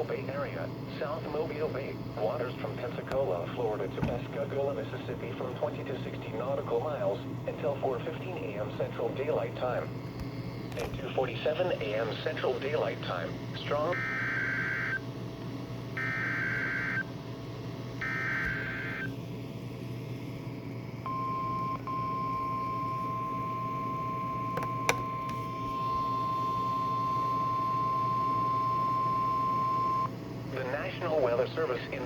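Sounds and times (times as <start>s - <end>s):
receiver hum: 0.0s - 32.0s
steady warning alarm tone: 13.7s - 15.1s, 16.0s - 17.1s, 18.0s - 19.1s, 21.0s - 30.1s.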